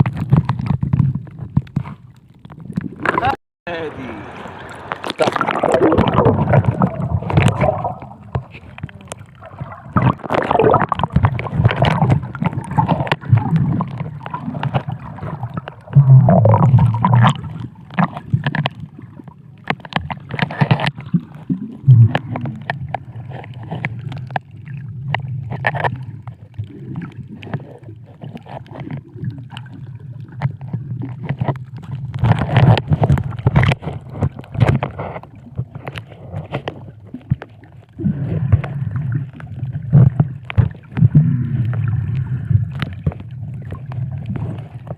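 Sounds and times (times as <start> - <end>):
clicks and crackles: 0.0 - 3.4, 4.9 - 44.9
muffled underwater rumble: 0.0 - 44.9
gurgling bubbles: 2.4 - 44.9.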